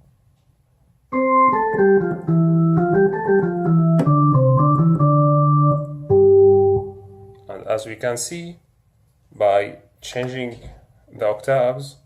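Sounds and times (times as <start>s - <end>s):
synthesizer organ chords: 1.1s - 7.5s.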